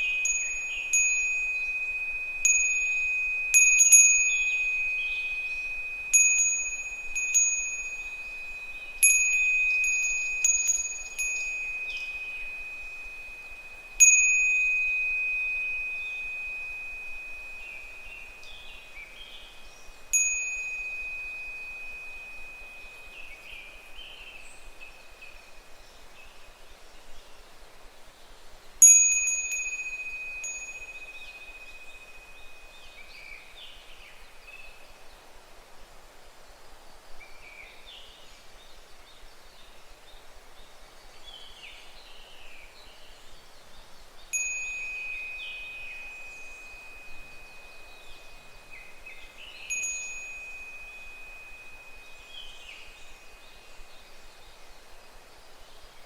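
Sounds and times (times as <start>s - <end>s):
wind chime ringing: 0.0s - 19.0s, 20.0s - 24.0s, 28.8s - 32.7s, 44.3s - 54.2s
cicadas calling faintly: 0.0s - 56.0s.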